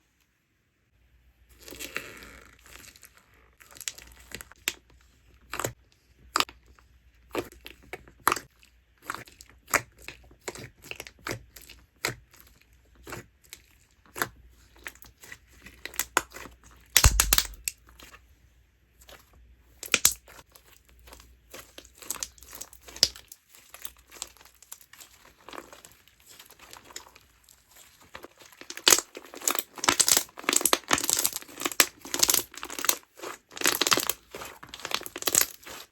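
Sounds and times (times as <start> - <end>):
slime popping and crackling: 16.9 - 17.7, 21.6 - 35.9.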